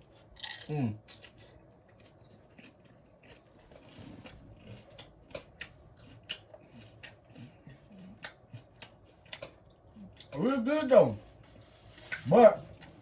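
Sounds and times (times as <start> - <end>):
chewing crunchy chips: 0.0 - 10.4.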